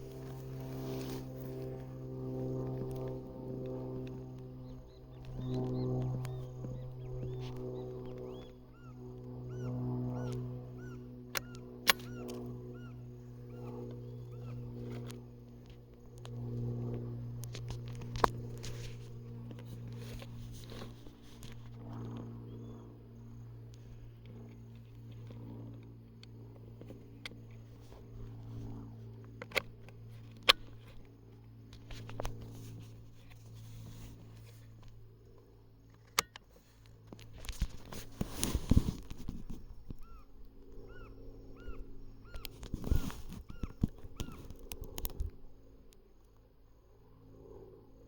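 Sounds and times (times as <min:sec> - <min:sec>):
rustling: 0:00.0 - 0:01.9
steady low hum: 0:00.0 - 0:48.0
animal sounds: 0:07.2 - 0:15.2
sharp clicks: 0:11.3 - 0:12.5.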